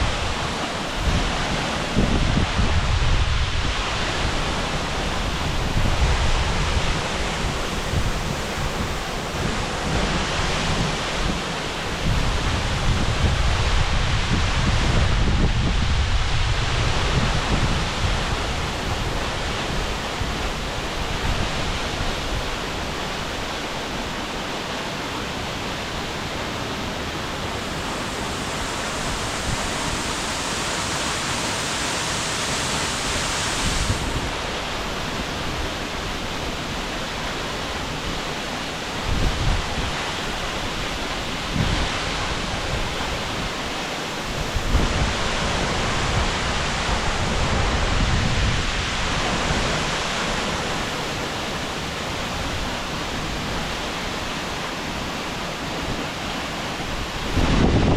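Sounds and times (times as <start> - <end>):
wind buffeting microphone: 0.0 - 22.6, 27.3 - 36.2, 44.2 - 50.2, 56.9 - 57.9
waterfall rushing: 0.0 - 57.9.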